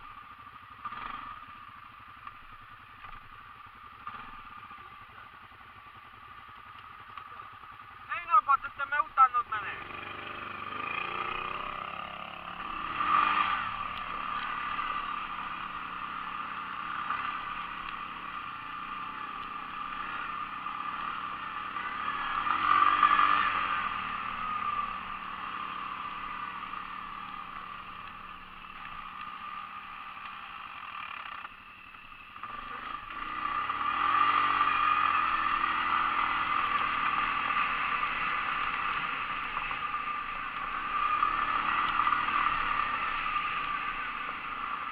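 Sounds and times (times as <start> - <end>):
quad bike engines revving: 0.0 - 44.9.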